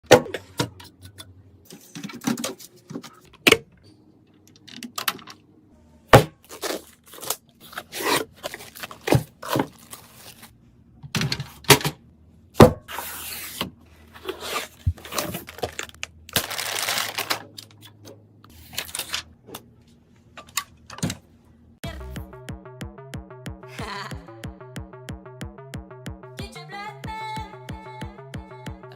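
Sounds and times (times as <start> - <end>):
plastic packaging rustling: 6.4 - 10.6, 14.0 - 18.0, 18.6 - 19.3.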